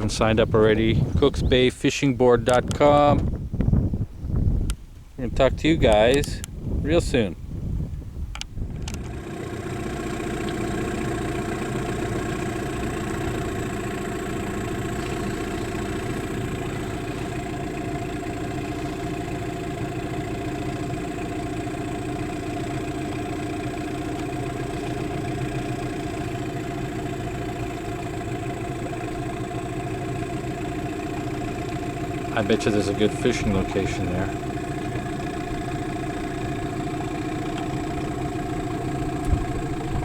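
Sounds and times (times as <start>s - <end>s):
boat motor humming: 0.0s - 40.0s.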